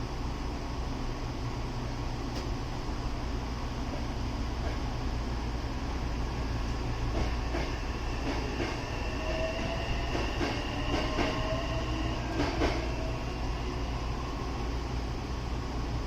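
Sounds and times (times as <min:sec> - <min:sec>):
railcar equipment hum: 0:00.0 - 0:16.0
train wheels clacking over rail joints: 0:07.1 - 0:08.8.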